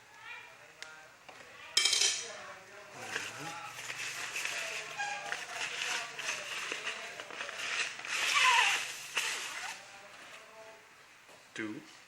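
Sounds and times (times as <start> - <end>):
rod sections rustling and clicking: 3.0 - 10.4.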